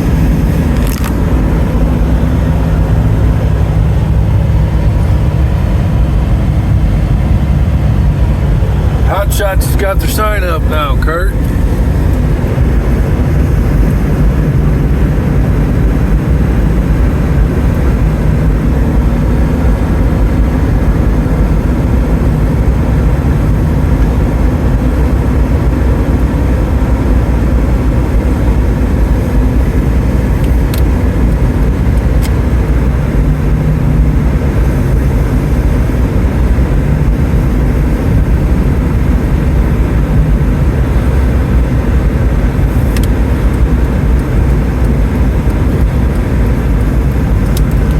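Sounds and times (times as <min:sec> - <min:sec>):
car driving road rumble: 0:00.0 - 0:47.9
faint clicks: 0:44.2 - 0:47.9.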